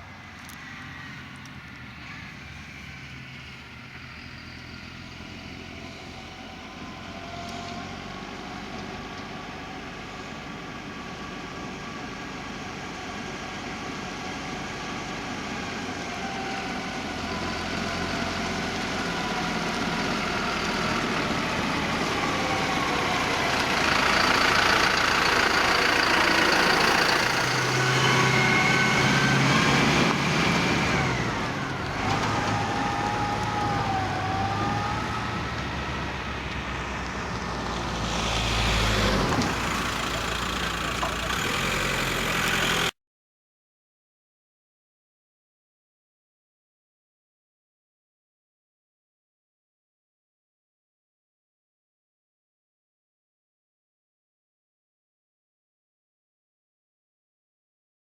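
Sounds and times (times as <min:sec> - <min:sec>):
diesel machinery engines running: 0:00.0 - 0:42.9
harsh machine noise: 0:18.7 - 0:35.8.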